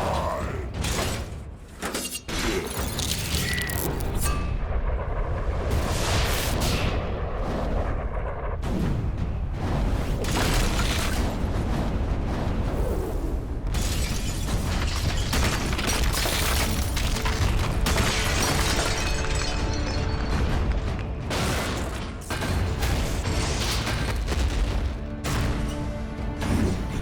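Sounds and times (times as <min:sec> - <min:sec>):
heavy booms: 0:04.4 - 0:25.8
orchestral score: 0:17.3 - 0:27.0.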